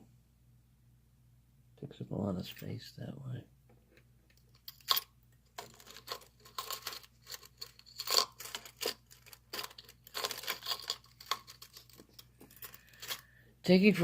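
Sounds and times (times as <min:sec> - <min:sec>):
small metal tools rustling: 0:04.3 - 0:13.4.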